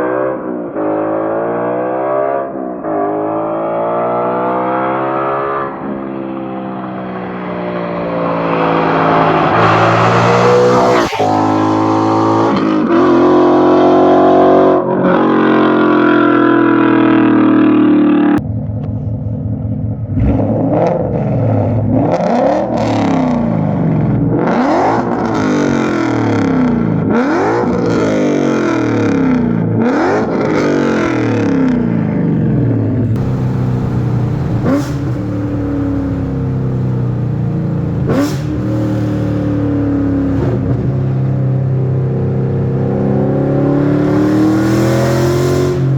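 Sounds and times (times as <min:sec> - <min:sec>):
car exhaust revving: 0:08.4 - 0:13.6, 0:19.7 - 0:45.9.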